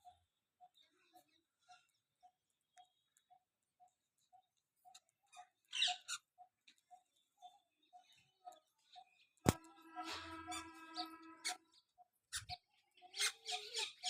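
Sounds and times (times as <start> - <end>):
parrot chirp: 4.4 - 8.6, 9.4 - 14.0.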